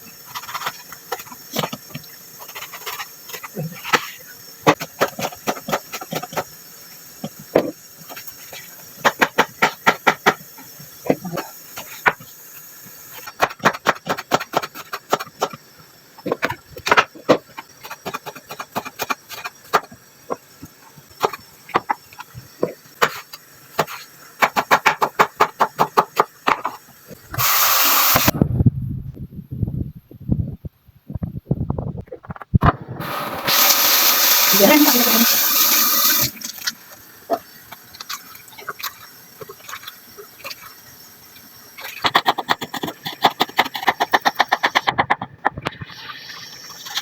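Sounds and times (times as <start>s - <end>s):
knife chopping on cutting board: 23.8s - 26.7s, 42.0s - 45.4s
loud hissing burst: 27.4s - 28.4s, 32.9s - 36.4s.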